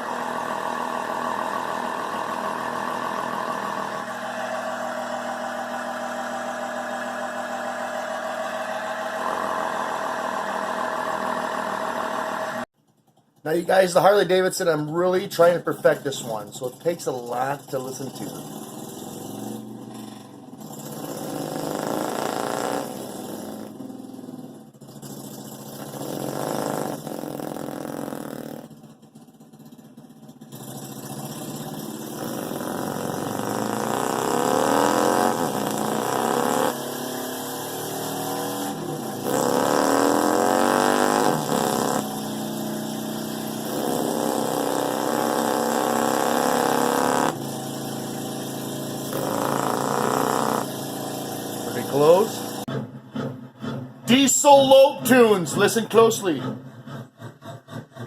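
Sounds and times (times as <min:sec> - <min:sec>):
man imitating motorcycle engine: 0:13.4 - 0:18.8, 0:21.1 - 0:23.8, 0:25.9 - 0:28.8, 0:31.7 - 0:36.9, 0:38.1 - 0:42.3, 0:43.1 - 0:47.4, 0:49.0 - 0:50.8, 0:51.6 - 0:52.7, 0:54.1 - 0:56.6.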